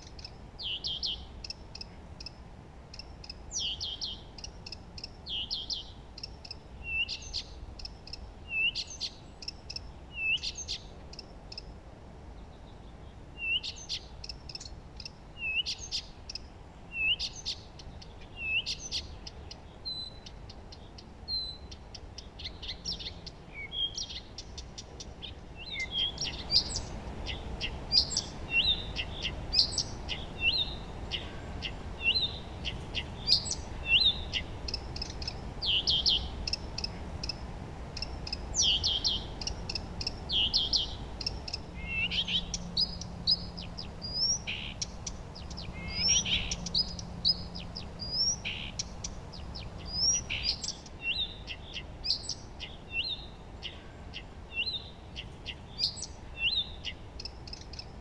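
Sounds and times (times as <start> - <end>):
songbirds singing and chirping: 0.0 - 58.0
low background rumble: 19.0 - 51.9.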